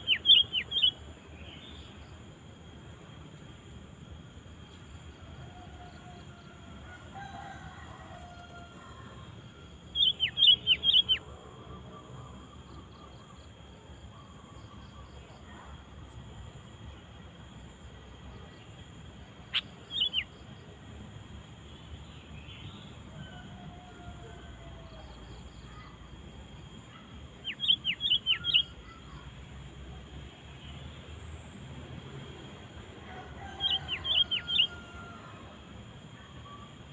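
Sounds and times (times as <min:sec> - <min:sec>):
bulbul calling: 0:00.0 - 0:01.0, 0:09.9 - 0:11.2, 0:19.5 - 0:20.3, 0:27.4 - 0:29.2, 0:33.6 - 0:34.7.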